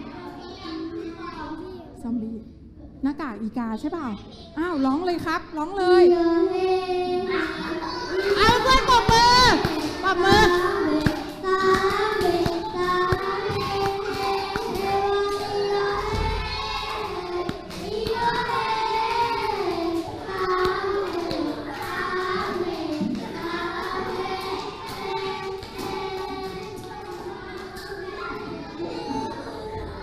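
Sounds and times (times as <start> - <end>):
child singing: 5.9 - 30.0
children clapping along: 8.1 - 29.8.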